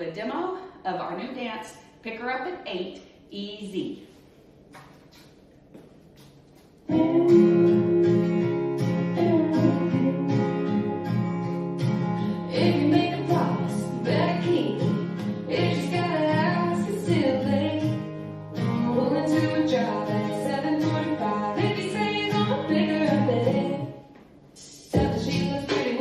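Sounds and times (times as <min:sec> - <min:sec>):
woman singing: 0:06.9 - 0:11.0, 0:12.5 - 0:18.0, 0:18.6 - 0:24.0, 0:24.6 - 0:26.0
strummed acoustic guitar: 0:06.9 - 0:23.9.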